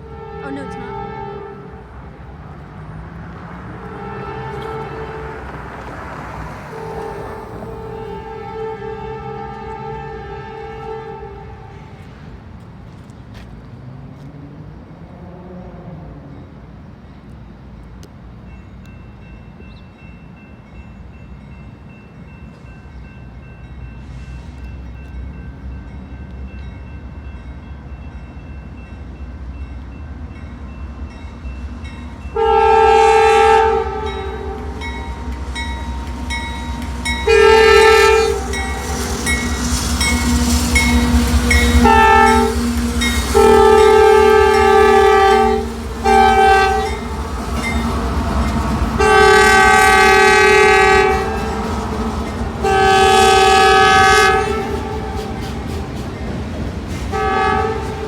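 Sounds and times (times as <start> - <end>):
train air horn blasts: 0.0 - 2.4, 3.7 - 12.1, 32.3 - 56.0, 56.9 - 58.0
diesel locomotives rumbling past: 0.0 - 58.0.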